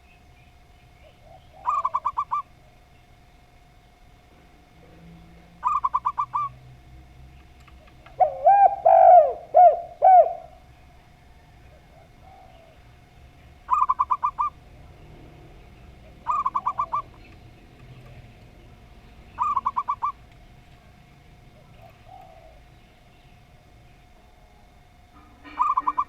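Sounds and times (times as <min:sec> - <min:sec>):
lower arching dove coos: 0:01.0 - 0:03.0, 0:04.7 - 0:15.0, 0:15.8 - 0:18.2, 0:18.8 - 0:23.8, 0:25.2 - 0:26.0
short higher dove coos: 0:08.1 - 0:10.6, 0:25.4 - 0:26.0.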